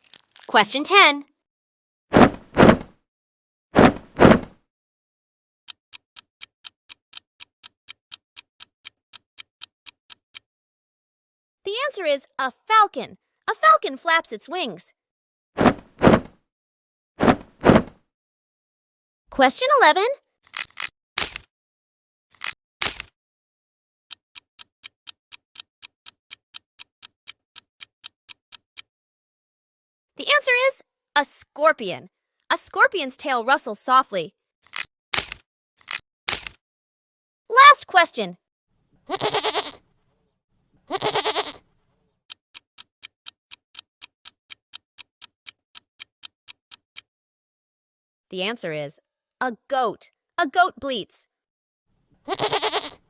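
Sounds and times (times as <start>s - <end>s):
clock-like ticking: 5.7s - 10.5s, 24.1s - 28.9s, 42.3s - 47.1s
goat bleating: 39.1s - 39.8s, 40.9s - 41.6s, 52.2s - 53.0s.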